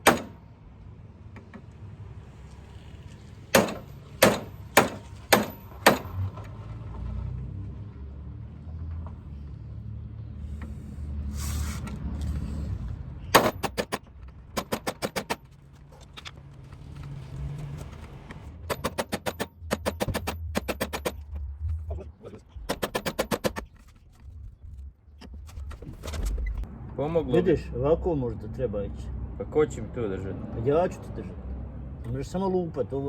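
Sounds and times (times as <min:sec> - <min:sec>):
hammer striking steel punch: 0:00.0 - 0:00.4, 0:03.6 - 0:06.2, 0:13.4 - 0:14.0, 0:14.6 - 0:15.4, 0:18.7 - 0:21.2, 0:22.7 - 0:23.6.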